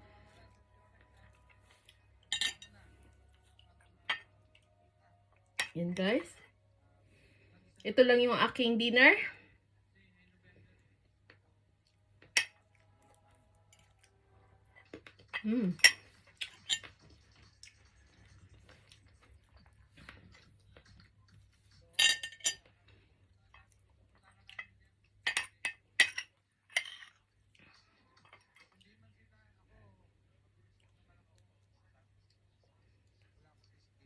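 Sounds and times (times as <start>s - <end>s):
cutlery clinking on dishes: 2.2s - 2.8s, 14.8s - 17.8s, 21.8s - 22.8s, 24.5s - 27.2s.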